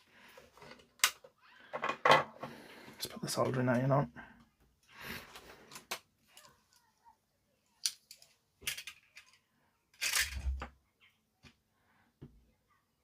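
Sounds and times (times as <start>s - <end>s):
tools and plastic parts clicking: 0.4s - 2.4s, 7.8s - 10.7s.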